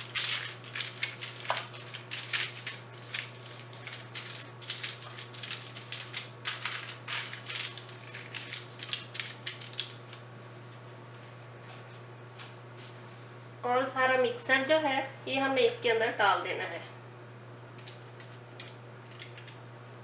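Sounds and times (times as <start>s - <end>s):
parchment paper rustling: 0.0s - 10.0s.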